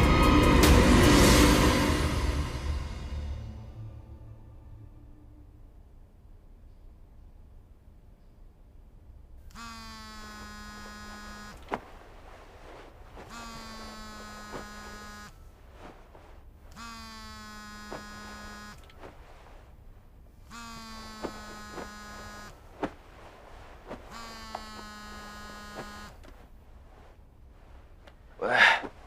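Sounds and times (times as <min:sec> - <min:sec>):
phone vibrating buzz: 0:09.4 - 0:19.7, 0:20.3 - 0:27.1.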